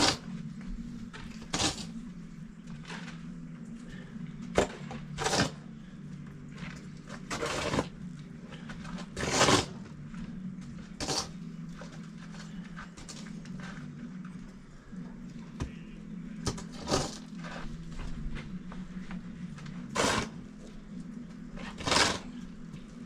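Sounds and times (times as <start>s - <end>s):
steady low hum: 0.0s - 23.0s
snow shovel scraping snow: 1.5s - 1.9s, 5.2s - 5.6s, 7.2s - 8.0s, 9.1s - 9.8s, 11.0s - 11.4s, 16.7s - 17.7s, 19.9s - 20.4s, 21.6s - 22.4s.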